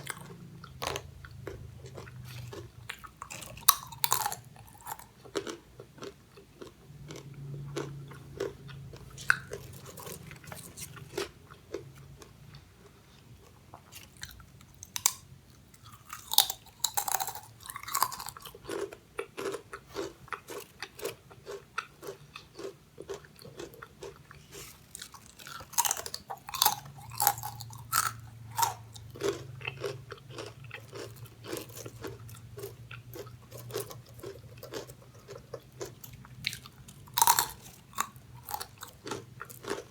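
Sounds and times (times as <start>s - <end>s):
crunching chips: 0.0s - 12.4s, 13.8s - 39.9s.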